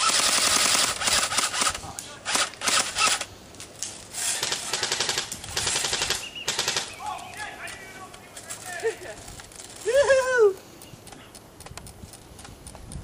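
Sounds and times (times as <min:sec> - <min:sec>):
airsoft guns firing full auto: 0:00.0 - 0:03.3, 0:04.2 - 0:07.8.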